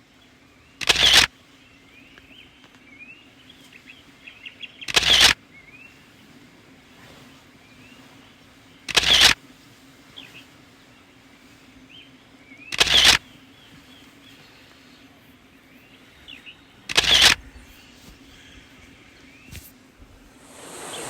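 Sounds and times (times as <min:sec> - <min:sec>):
faint birds chirping: 0:00.0 - 0:21.0
camera shutter: 0:00.8 - 0:01.3, 0:04.9 - 0:05.4, 0:08.9 - 0:09.4, 0:12.7 - 0:13.2, 0:16.9 - 0:17.4.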